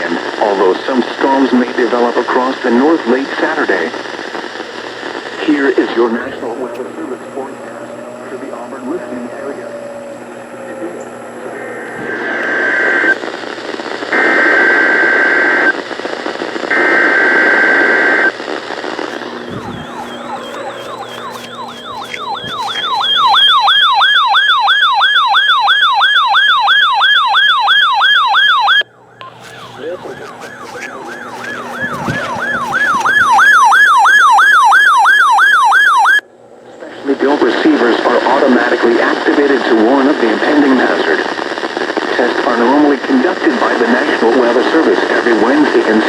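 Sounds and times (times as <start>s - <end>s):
buzzy data tones: 0.9s - 26.6s, 27.6s - 36.0s
electronic siren yelping: 6.1s - 13.2s, 19.0s - 36.2s.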